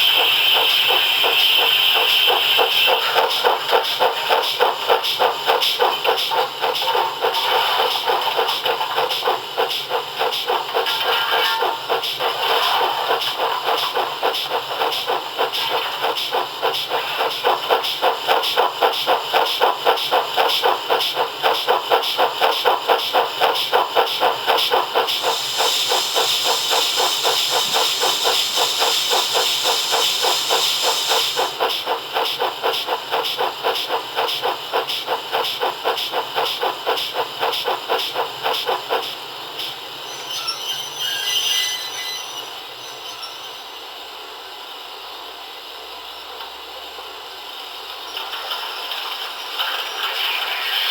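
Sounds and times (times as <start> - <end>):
steam locomotive exhaust chuffs: 0.0 - 44.2
steam hiss: 0.0 - 45.7.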